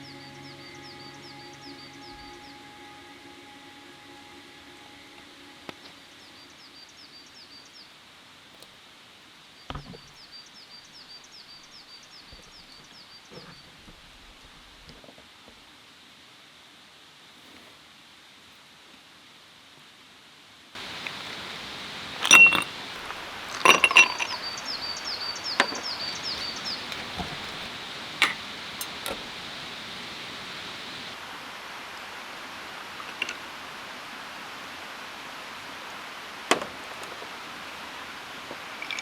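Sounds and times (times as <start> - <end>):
bird chirping: 0.0 - 8.0, 20.8 - 31.2
outdoor background hiss: 0.0 - 39.0
hard objects clinking: 20.8 - 29.3, 38.8 - 39.0.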